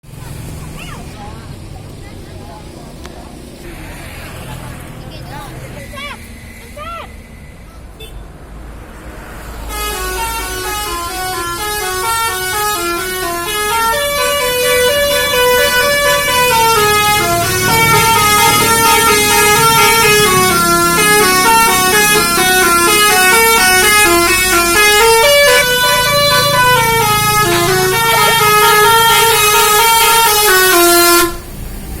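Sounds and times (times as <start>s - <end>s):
low rumble: 3.6s - 11.4s
multi-tone air horn melody: 9.4s - 31.6s.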